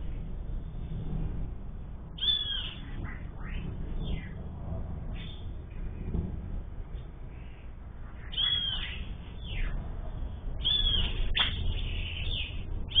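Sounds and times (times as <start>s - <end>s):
low rumble: 0.0s - 13.0s
bird squeaky calls: 2.2s - 4.4s, 8.3s - 9.8s, 10.6s - 13.0s.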